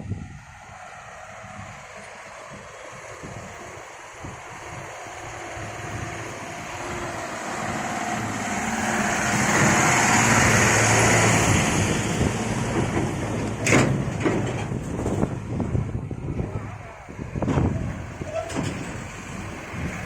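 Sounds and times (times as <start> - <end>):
heavy vehicle engine running: 0.0 - 20.0.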